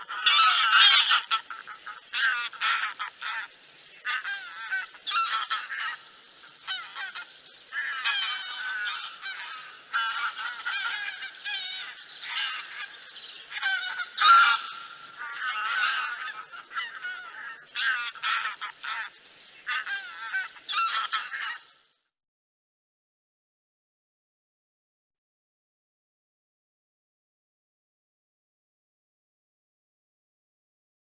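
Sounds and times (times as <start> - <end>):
geese honking: 0.0 - 21.7.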